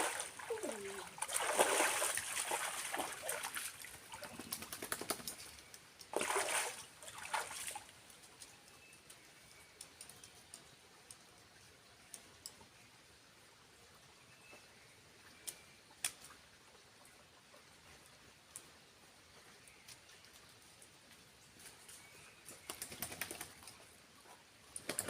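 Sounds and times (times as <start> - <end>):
water splashing and sloshing: 0.0 - 5.4, 6.0 - 8.5.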